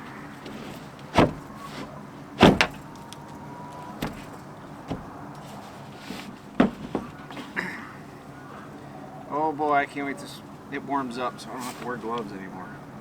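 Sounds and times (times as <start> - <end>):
knocks on wood: 0.5 - 1.5, 2.4 - 2.9, 4.0 - 5.1, 6.6 - 7.2.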